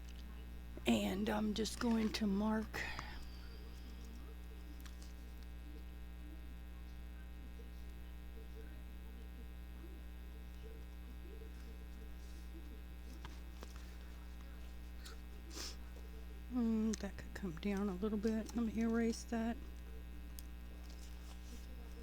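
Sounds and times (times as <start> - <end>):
electrical mains hum: 0.0 - 22.0.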